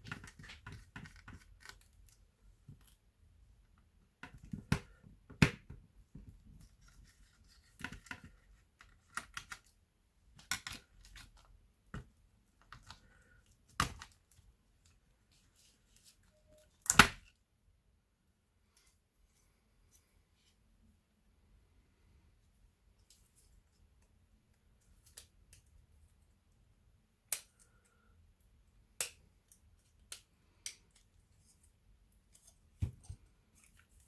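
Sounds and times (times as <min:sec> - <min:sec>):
laptop parts clicking and scraping: 0:00.0 - 0:02.9.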